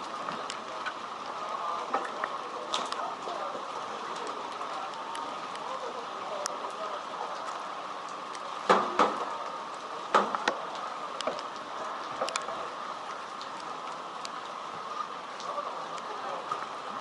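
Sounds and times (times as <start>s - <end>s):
heavy rain falling: 0.0s - 17.0s
sharp drip taps and knocks: 1.8s - 12.7s.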